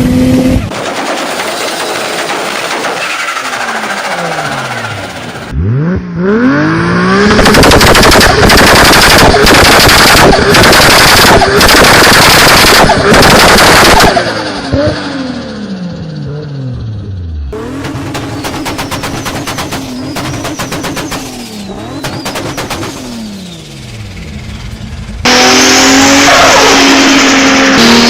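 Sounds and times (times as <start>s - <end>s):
car engine revving: 0.0s - 28.0s
turbo flutter: 7.3s - 14.2s, 17.8s - 24.0s.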